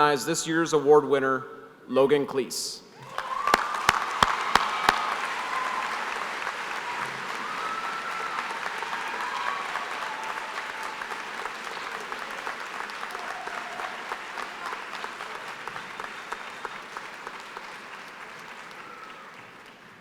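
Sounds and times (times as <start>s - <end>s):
large audience applauding: 3.0s - 20.0s.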